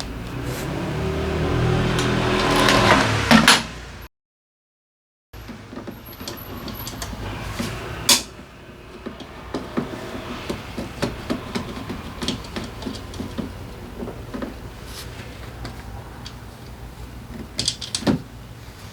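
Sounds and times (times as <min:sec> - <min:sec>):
tools and metal parts clinking: 0:01.9 - 0:03.6, 0:05.4 - 0:18.3.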